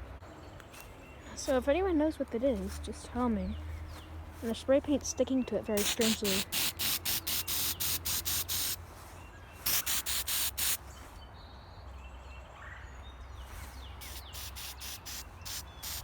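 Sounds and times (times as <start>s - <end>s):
spray paint can bursts: 5.8s - 8.8s, 9.6s - 10.8s, 14.0s - 16.0s
faint bird chirps: 10.9s - 16.0s.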